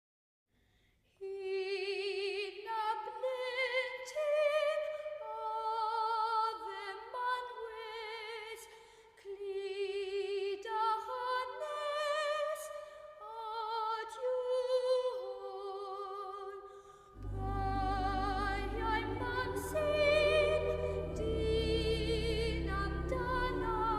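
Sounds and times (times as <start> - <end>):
operatic solo singing: 17.2 - 23.9.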